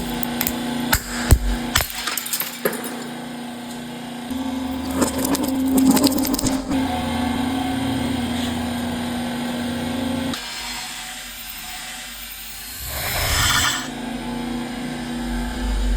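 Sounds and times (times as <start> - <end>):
whine and hiss: 12.2 - 15.9.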